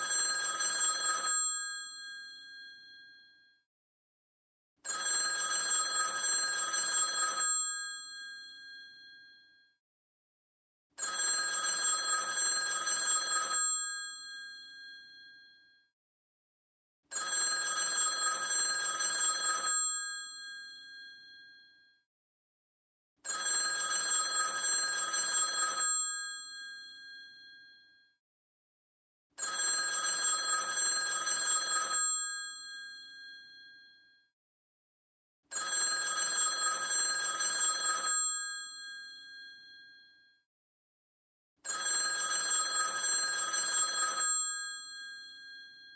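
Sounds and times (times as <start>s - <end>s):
telephone bell ringing: 0.0s - 3.4s, 4.8s - 9.6s, 11.0s - 15.8s, 17.1s - 21.8s, 23.2s - 28.0s, 29.4s - 34.2s, 35.5s - 40.2s, 41.6s - 45.9s.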